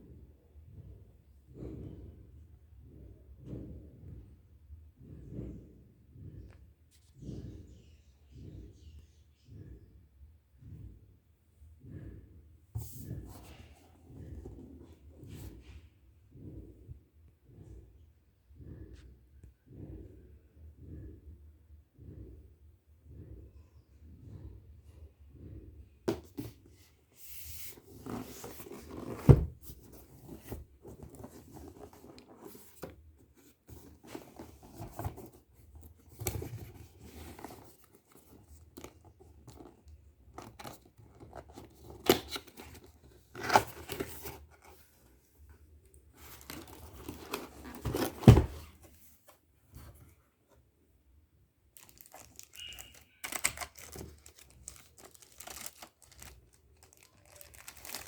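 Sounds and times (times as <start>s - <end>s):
packaging rustling and crinkling: 27.2s - 44.8s, 46.2s - 49.0s, 51.8s - 58.0s.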